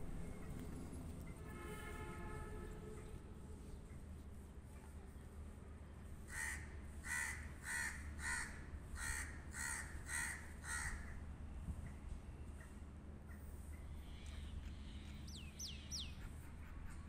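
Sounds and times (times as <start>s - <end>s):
crow cawing: 6.3s - 11.2s.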